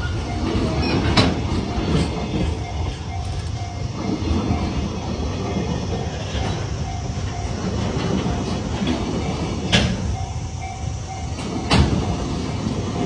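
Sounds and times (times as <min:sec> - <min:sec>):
wheel clacks over rail joints: 0:00.0 - 0:04.8, 0:07.3 - 0:10.4, 0:11.2 - 0:13.0
crossing alarm dinging: 0:00.0 - 0:13.0
freight train rumble: 0:00.0 - 0:13.0.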